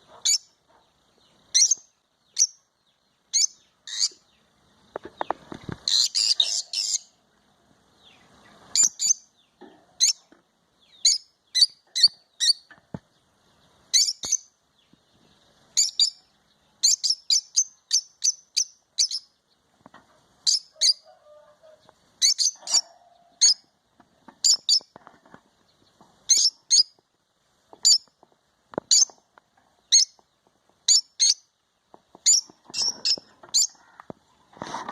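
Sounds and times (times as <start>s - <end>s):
bird chirping: 0.0s - 27.0s, 27.7s - 34.6s.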